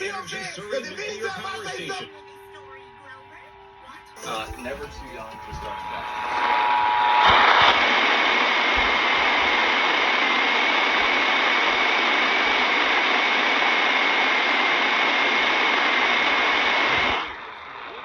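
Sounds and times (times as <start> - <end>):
static hiss: 5.0 - 18.0.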